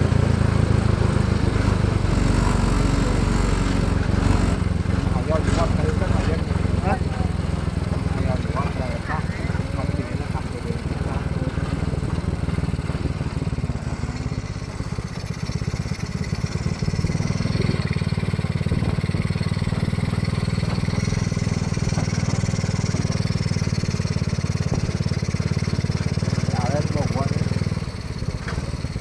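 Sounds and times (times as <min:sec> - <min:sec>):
motorcycle engine running: 0:00.0 - 0:29.0.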